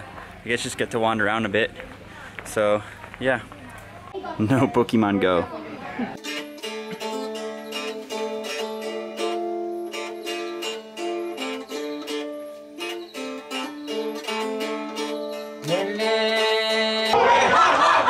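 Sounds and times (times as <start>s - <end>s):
plucked string instrument music: 6.1s - 17.2s.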